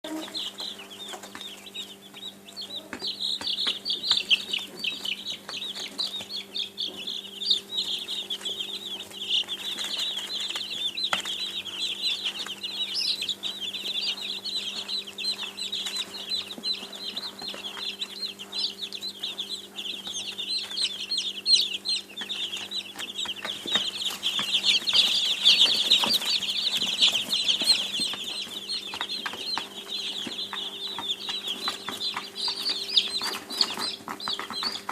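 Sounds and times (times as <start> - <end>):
baby chicks peeping: 0.0 - 34.9.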